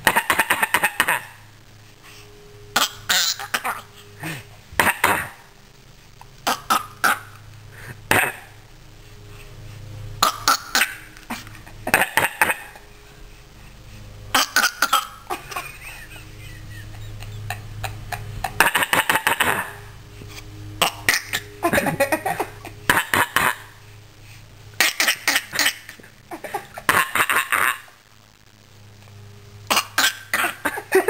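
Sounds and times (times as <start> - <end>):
baby coughing: 4.8 - 5.4, 14.3 - 15.8, 24.8 - 26.0, 29.7 - 30.8.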